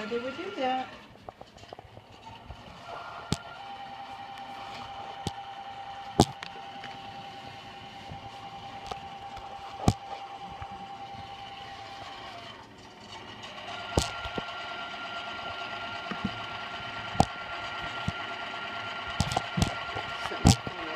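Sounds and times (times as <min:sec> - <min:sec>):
speakers whining with fast pulsing: 0:00.0 - 0:20.9
sharp clicks: 0:13.9 - 0:14.5.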